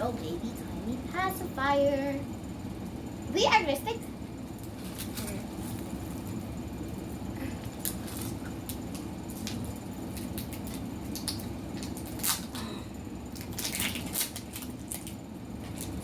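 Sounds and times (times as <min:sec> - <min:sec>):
low room hum: 0:00.0 - 0:16.0
plastic wrappers crinkling: 0:07.6 - 0:12.6, 0:13.3 - 0:16.0.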